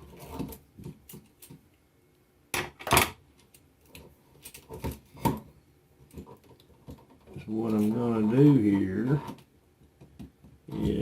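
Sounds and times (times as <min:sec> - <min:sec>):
scrape and clatter: 0:00.0 - 0:00.6.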